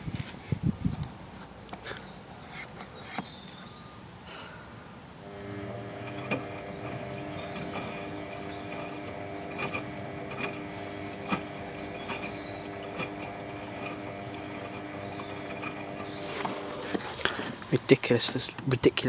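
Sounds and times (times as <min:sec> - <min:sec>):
washing machine motor humming: 0:05.2 - 0:17.8.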